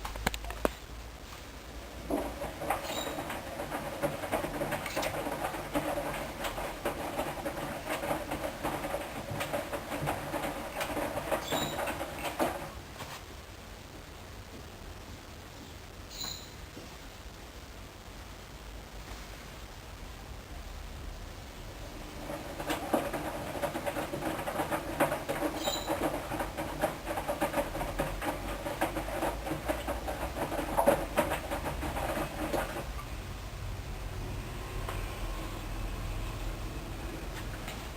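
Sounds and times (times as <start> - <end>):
washing machine motor hum: 1.7 - 12.9, 21.6 - 37.9
laundry tumbling in drum: 1.9 - 13.2, 22.0 - 33.0.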